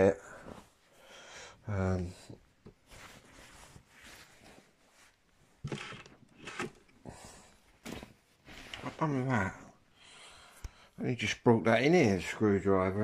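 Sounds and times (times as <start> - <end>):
objects being handled: 2.6 - 7.1, 7.7 - 9.0.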